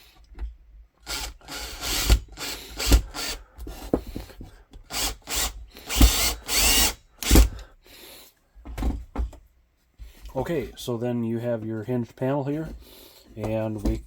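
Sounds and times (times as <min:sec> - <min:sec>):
power drill driving screws: 0:01.0 - 0:03.4, 0:04.9 - 0:07.6.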